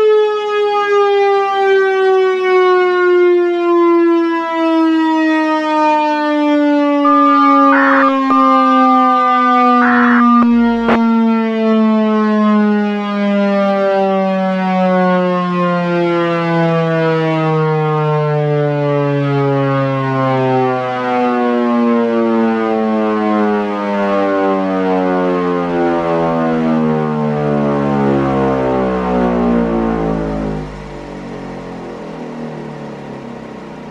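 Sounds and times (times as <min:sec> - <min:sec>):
warning siren winding down: 0:07.1 - 0:11.4.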